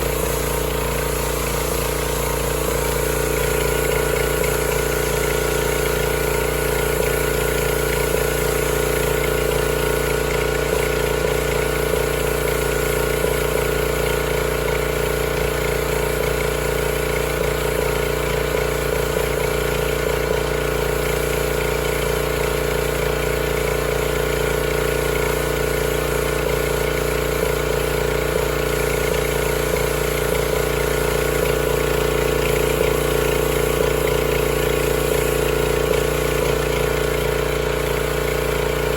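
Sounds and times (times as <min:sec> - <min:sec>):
pressure washer engine running: 0:00.0 - 0:38.9.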